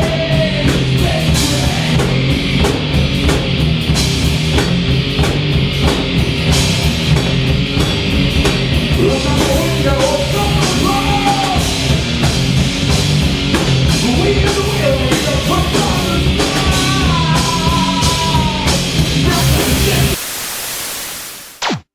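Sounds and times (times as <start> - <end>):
rock band playing: 0.0 - 20.2
steady hiss: 20.1 - 21.7.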